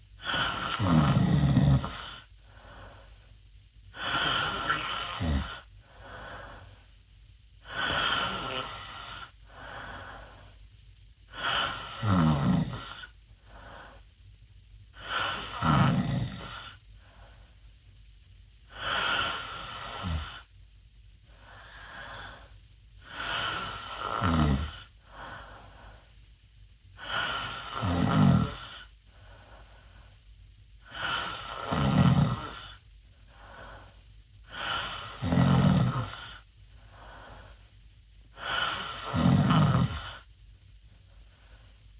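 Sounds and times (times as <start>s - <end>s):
soft breaths: 0.0s - 41.9s
boy snoring loudly: 0.2s - 2.3s, 4.0s - 5.7s, 7.6s - 9.4s, 11.3s - 13.1s, 15.0s - 16.8s, 18.7s - 20.5s, 23.0s - 24.9s, 27.0s - 28.9s, 30.8s - 32.8s, 34.5s - 36.4s, 38.4s - 40.3s.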